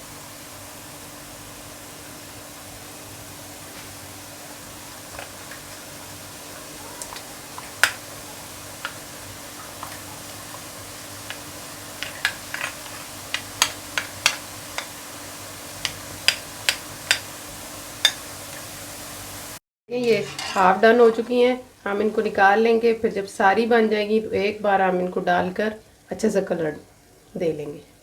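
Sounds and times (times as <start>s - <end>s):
batter frying in hot oil: 0.0s - 22.4s
oil popping and crackling: 4.8s - 18.8s.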